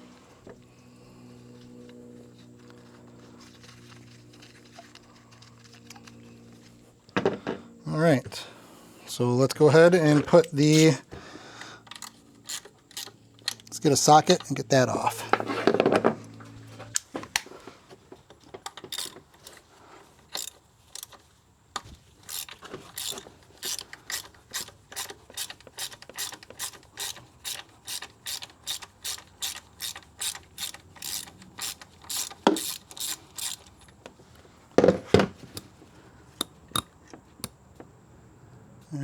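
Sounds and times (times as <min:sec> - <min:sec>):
socket ratchet clicking: 0:11.8 - 0:14.6, 0:18.9 - 0:19.6, 0:20.3 - 0:21.2, 0:22.3 - 0:34.2, 0:36.4 - 0:37.6.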